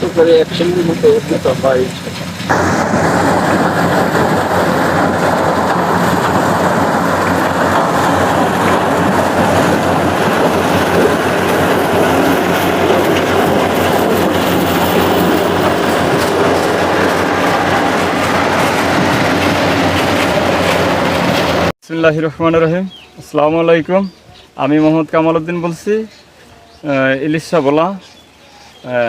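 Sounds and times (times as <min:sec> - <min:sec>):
engine drone: 0:00.0 - 0:21.7
mechanical clatter: 0:00.6 - 0:21.7.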